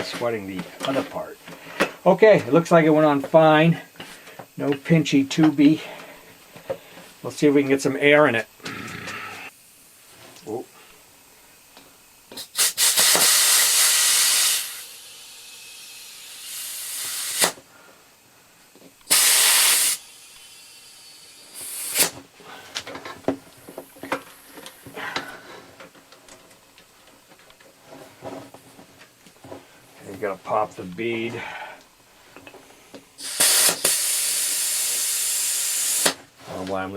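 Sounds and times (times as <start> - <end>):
air hose hissing: 12.3 - 17.7, 19.0 - 22.4, 33.2 - 36.3.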